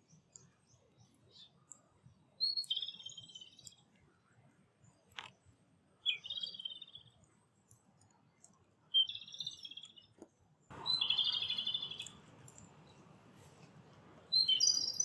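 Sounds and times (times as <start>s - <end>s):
rustle: 10.7s - 15.0s
songbird warbling: 10.7s - 15.0s.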